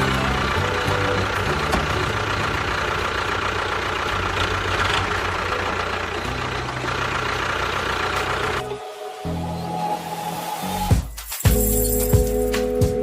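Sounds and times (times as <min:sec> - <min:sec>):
low bass line: 0:00.0 - 0:07.3
engine idling: 0:00.0 - 0:08.8.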